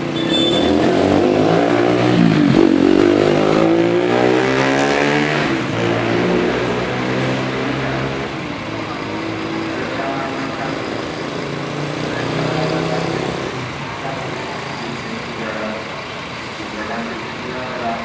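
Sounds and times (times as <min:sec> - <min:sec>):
multi-tone bus horn: 0:00.0 - 0:01.2
bus engine noise: 0:00.0 - 0:18.0
voices: 0:05.8 - 0:18.0.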